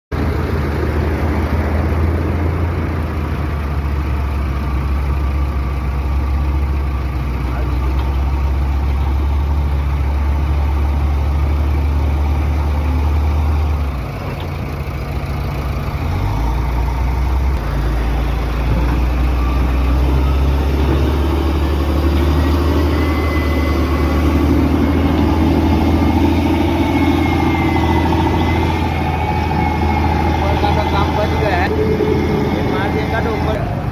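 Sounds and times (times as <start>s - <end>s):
diesel engine running: 0.1s - 33.9s
thin whine: 16.4s - 33.8s.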